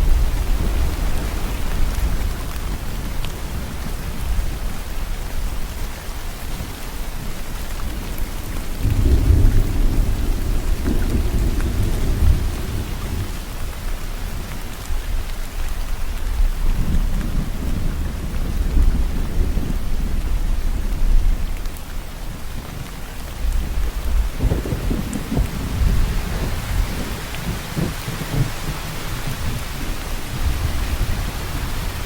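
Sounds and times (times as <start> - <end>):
low rolling thunder: 0.0 - 5.7, 7.4 - 14.4, 16.2 - 32.0
steady rain falling: 0.0 - 32.0.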